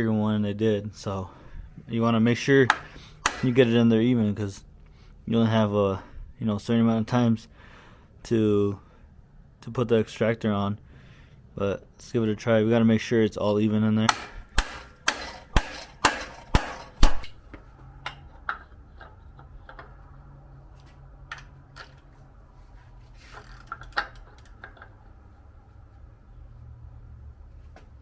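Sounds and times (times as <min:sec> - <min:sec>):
tool clicks and taps: 0:02.7 - 0:03.6, 0:14.1 - 0:20.0
hammer blows on metal: 0:02.7 - 0:03.8, 0:14.1 - 0:17.4.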